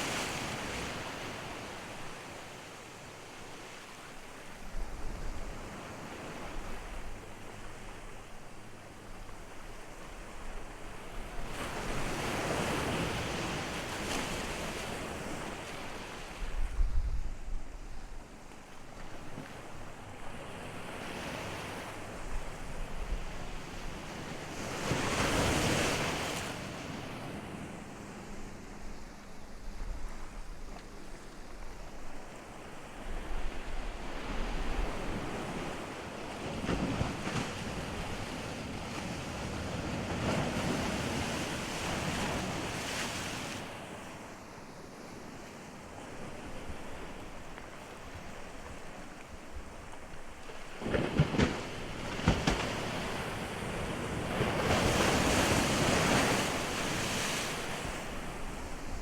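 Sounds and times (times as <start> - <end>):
waves breaking on shore: 0.0 - 59.0
wind buffeting microphone: 16.4 - 18.2.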